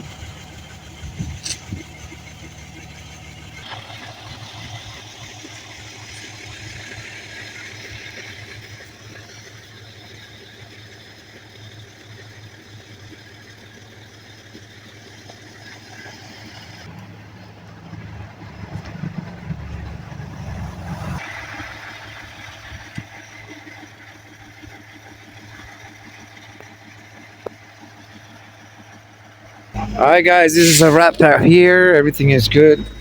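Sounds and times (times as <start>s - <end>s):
engine idling hum: 0.0s - 33.0s
wide hiss: 30.0s - 31.4s.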